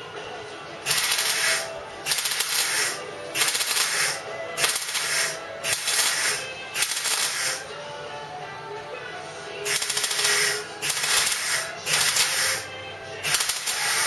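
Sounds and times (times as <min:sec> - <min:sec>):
welder crackling: 0:00.8 - 0:07.7, 0:09.6 - 0:14.0.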